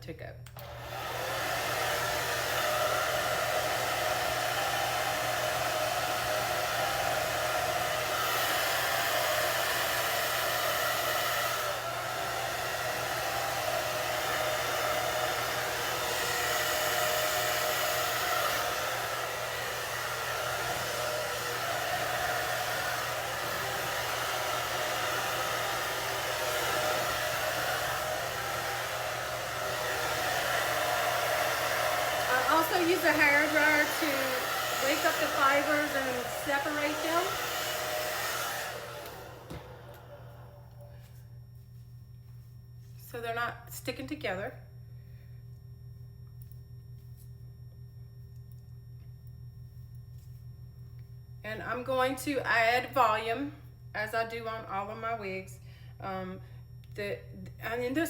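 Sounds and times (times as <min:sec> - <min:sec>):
hair dryer running: 0:00.4 - 0:41.4.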